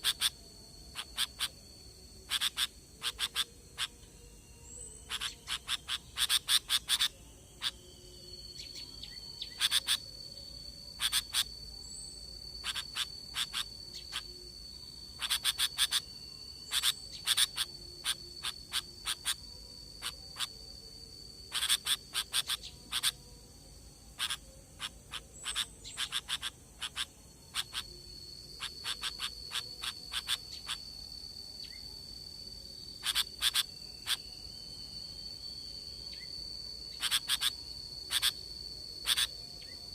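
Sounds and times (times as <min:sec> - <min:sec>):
bulbul chattering calls: 0:00.0 - 0:01.6, 0:02.3 - 0:03.9, 0:05.0 - 0:07.8, 0:09.4 - 0:10.0, 0:11.0 - 0:11.5, 0:12.6 - 0:14.2, 0:15.2 - 0:19.4, 0:21.5 - 0:23.2, 0:24.2 - 0:27.9, 0:28.6 - 0:30.8, 0:33.0 - 0:34.2, 0:37.0 - 0:37.5, 0:39.0 - 0:39.3.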